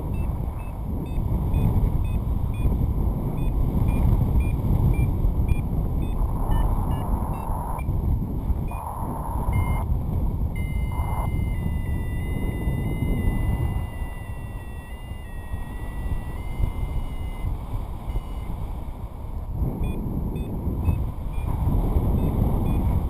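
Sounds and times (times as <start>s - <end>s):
variometer beeping: 0.0s - 7.9s, 8.7s - 9.9s, 10.5s - 18.6s, 19.8s - 23.0s
wind rushing over microphone: 0.0s - 23.0s
variometer sink tone: 8.7s - 9.9s, 10.5s - 18.6s.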